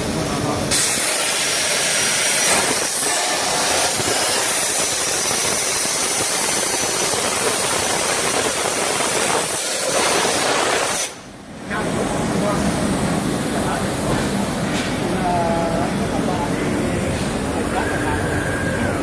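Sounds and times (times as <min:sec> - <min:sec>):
machine hissing: 0:00.0 - 0:19.0
faint high whines: 0:17.7 - 0:19.0.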